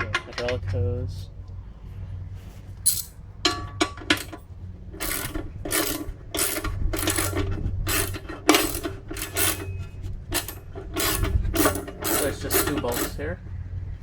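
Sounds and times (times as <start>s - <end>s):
socket ratchet clicking: 5.0s - 9.7s, 10.3s - 13.2s.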